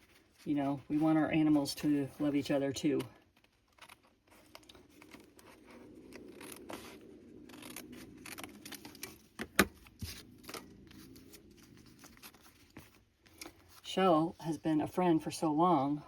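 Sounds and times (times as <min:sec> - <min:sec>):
paper rustling: 0:00.0 - 0:14.0
steady low hum: 0:04.4 - 0:16.0.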